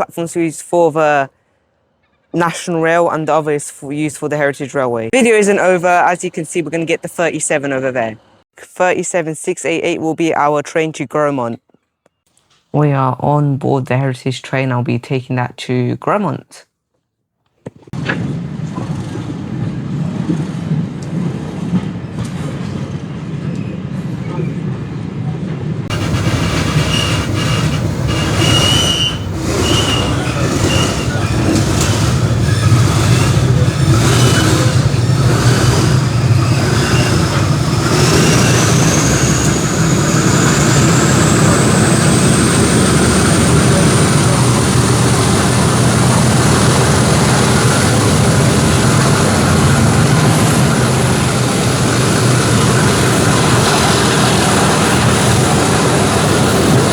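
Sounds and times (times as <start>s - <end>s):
diesel locomotive engine hum: 18.0s - 56.9s
high whistle rising in pitch: 25.9s - 45.8s.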